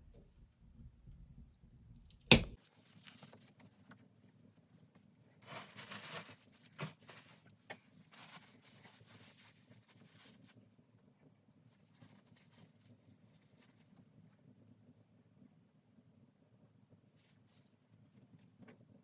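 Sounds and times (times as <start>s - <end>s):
sharp knock: 2.3s - 2.6s
rustling and scraping: 5.4s - 10.6s, 17.2s - 18.6s.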